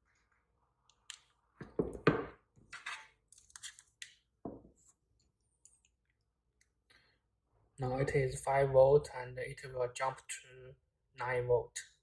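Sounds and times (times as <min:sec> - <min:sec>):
devices knocking on hard desk: 0:01.6 - 0:02.4.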